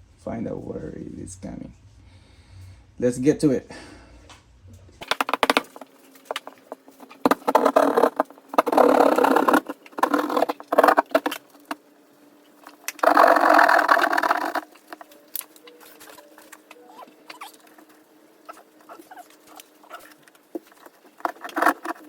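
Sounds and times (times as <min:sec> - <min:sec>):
rasping rattling tearing of wall: 0:07.3 - 0:11.4.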